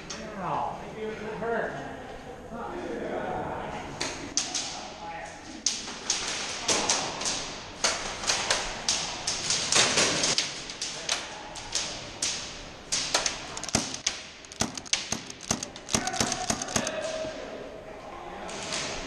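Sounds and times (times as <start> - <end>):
airsoft guns firing: 12.9 - 17.1.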